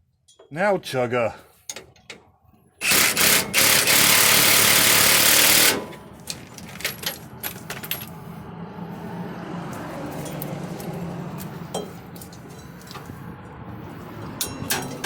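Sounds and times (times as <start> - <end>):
impact wrench running: 2.8 - 6.0.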